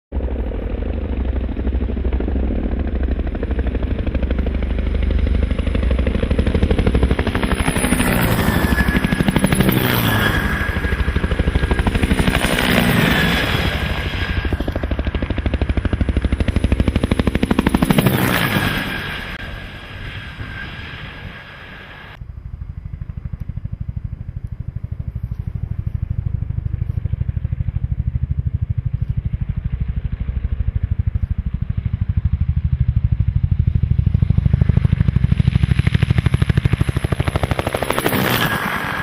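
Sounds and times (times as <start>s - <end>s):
high whine: 0.2s - 27.0s
helicopter rotor chopping: 0.2s - 39.0s.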